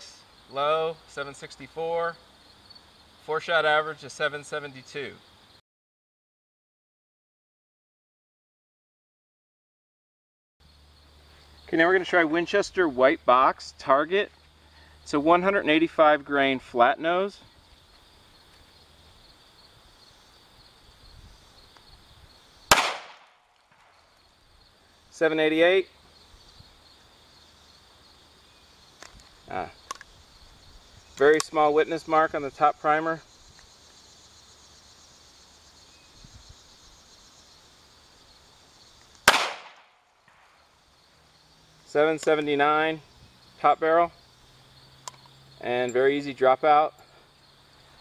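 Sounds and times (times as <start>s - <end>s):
faint insect buzz: 0.0s - 5.6s, 17.1s - 48.0s
pistol gunshot: 22.7s - 23.4s, 39.2s - 39.9s.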